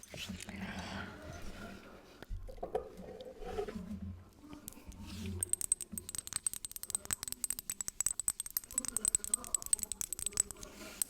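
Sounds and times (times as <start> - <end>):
fingernails tapping glass bottle: 4.7 - 11.0.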